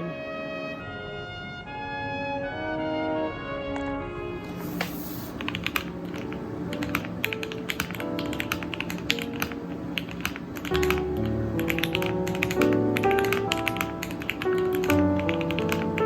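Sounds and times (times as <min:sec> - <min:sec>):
mechanical keyboard typing: 0:05.3 - 0:16.0
background music: 0:05.5 - 0:16.0.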